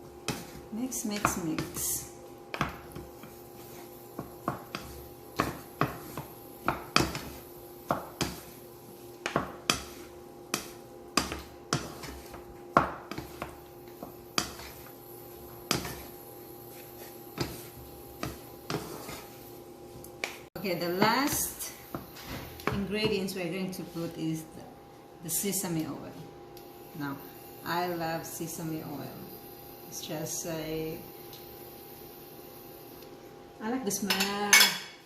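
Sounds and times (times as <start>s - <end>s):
spatula scraping a pan: 2.6s - 19.6s.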